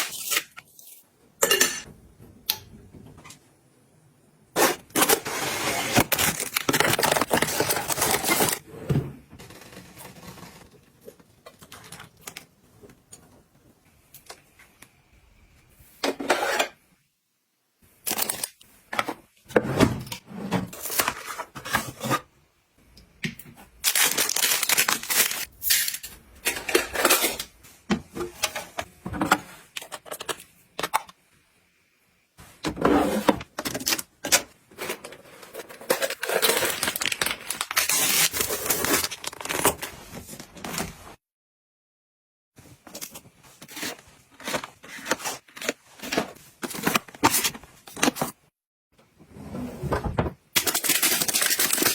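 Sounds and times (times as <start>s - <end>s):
packaging rustling: 5.0s - 8.6s, 23.8s - 25.5s, 33.6s - 40.9s, 50.6s - 51.9s.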